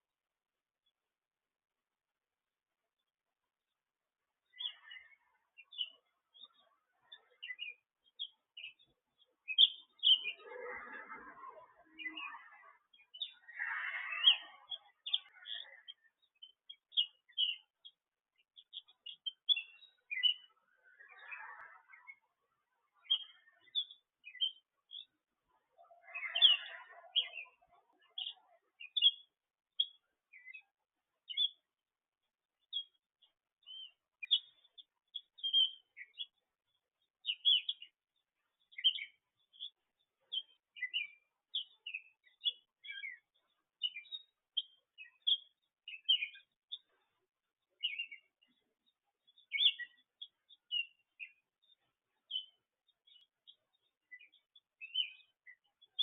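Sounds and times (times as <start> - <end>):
birds chirping: 4.4 - 31.7, 32.6 - 48.7, 49.3 - 56.0.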